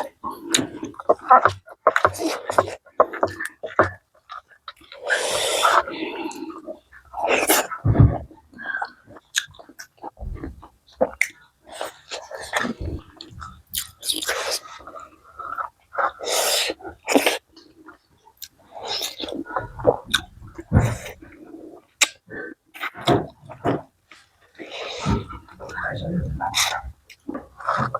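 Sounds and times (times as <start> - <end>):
hissy breaths or slurps: 5.0 - 6.6
chewing food: 8.6 - 21.4
wet mouth clicks: 12.5 - 14.7, 18.4 - 20.6.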